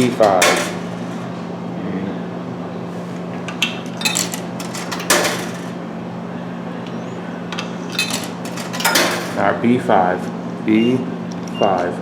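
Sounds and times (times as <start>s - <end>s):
coins clinking into coin slot: 0.0s - 1.0s, 3.6s - 5.8s, 7.6s - 9.6s
coin clatter: 3.9s - 5.7s, 7.9s - 9.4s.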